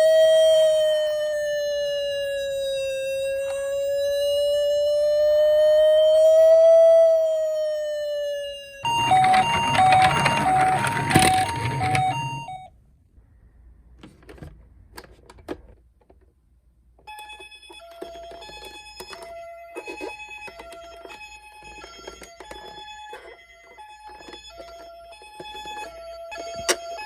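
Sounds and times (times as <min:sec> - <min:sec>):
toy electronic siren beeping: 0:00.0 - 0:12.7.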